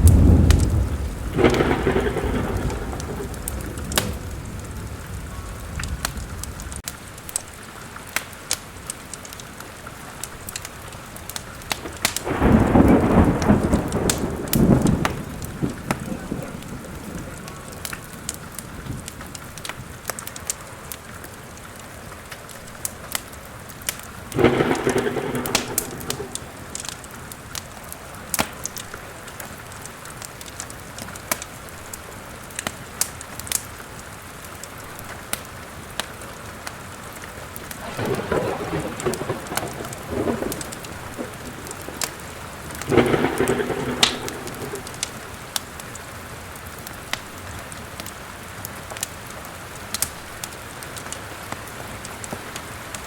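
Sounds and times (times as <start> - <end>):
rolls of thunder: 0.0 - 6.8, 11.7 - 19.6, 24.2 - 27.9, 37.6 - 45.6
fireplace fire crackling: 0.0 - 53.0
steady rain: 0.0 - 53.0.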